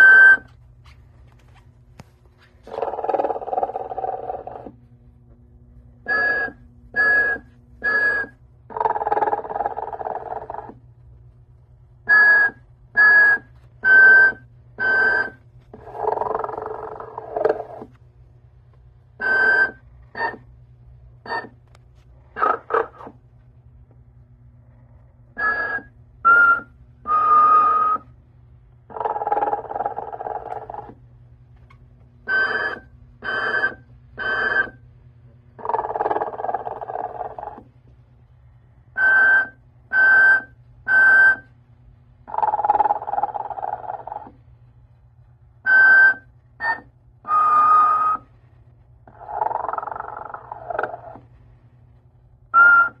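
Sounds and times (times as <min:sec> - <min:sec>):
steady low hum: 0:00.0 - 0:53.0
toy snoring with whistling: 0:02.7 - 0:04.8, 0:06.1 - 0:10.8, 0:12.1 - 0:17.9, 0:19.2 - 0:20.4, 0:21.3 - 0:21.5, 0:22.4 - 0:23.1, 0:25.3 - 0:28.1, 0:28.9 - 0:31.0, 0:32.3 - 0:34.8, 0:35.6 - 0:37.6, 0:39.0 - 0:41.4, 0:42.3 - 0:44.4, 0:45.7 - 0:48.3, 0:49.0 - 0:51.2, 0:52.6 - 0:53.0.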